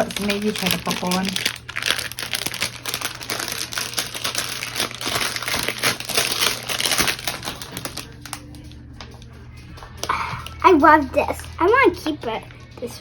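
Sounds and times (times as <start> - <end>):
plastic packaging crinkling: 0.0 - 9.2.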